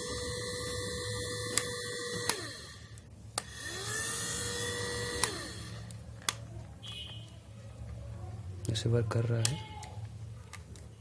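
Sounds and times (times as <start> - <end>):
hair dryer motor whining: 0.0 - 5.9.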